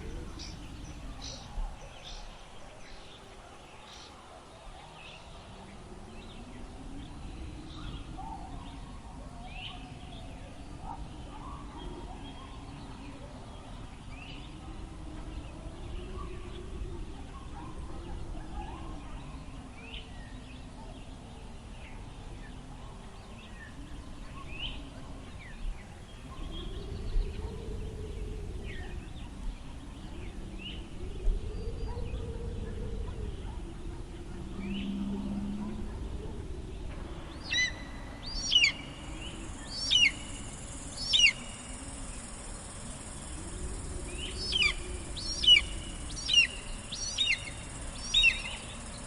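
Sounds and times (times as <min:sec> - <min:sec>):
wind blowing with moaning tone: 0:00.0 - 0:49.0
high bird calls: 0:44.2 - 0:48.9.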